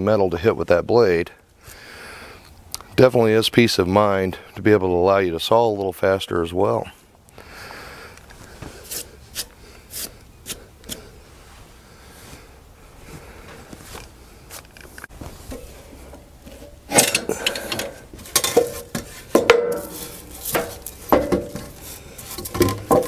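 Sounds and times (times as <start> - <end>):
rustling and scraping: 8.2 - 23.0
clattering knocks and clinks: 15.3 - 23.0.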